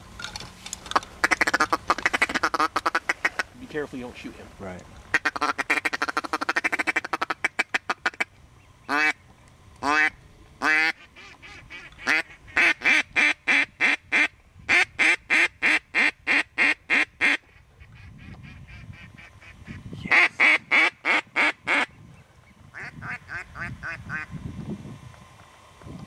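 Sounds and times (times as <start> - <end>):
duck call quacks: 1.2 - 3.5, 5.1 - 8.3, 8.9 - 9.2, 9.8 - 21.9.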